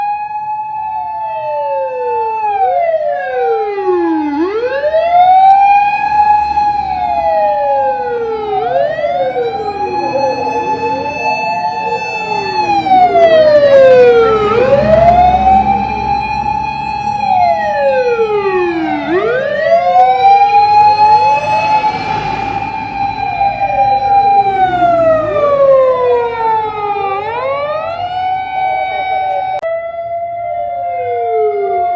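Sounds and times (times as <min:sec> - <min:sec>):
fire engine sirens wailing: 0:00.0 - 0:31.9
low engine rumble: 0:03.5 - 0:29.6.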